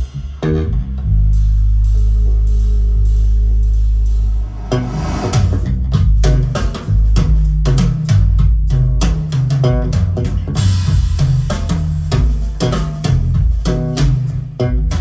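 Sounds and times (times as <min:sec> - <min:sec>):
cymbal crash: 0:04.0 - 0:06.2
band music through speakers: 0:05.9 - 0:15.0.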